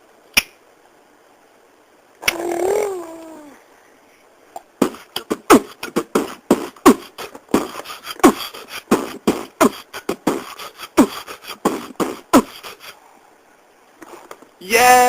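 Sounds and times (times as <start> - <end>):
popping mouth sounds: 2.2 - 2.9, 4.6 - 12.8
person humming: 2.2 - 3.6, 4.8 - 13.0.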